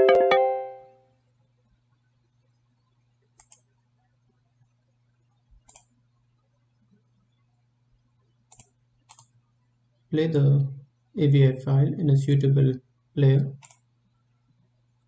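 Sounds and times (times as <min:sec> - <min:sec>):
faint low hum: 0:00.0 - 0:15.0
computer mouse clicks: 0:03.4 - 0:03.8, 0:05.5 - 0:06.0, 0:08.5 - 0:09.4, 0:13.6 - 0:13.9.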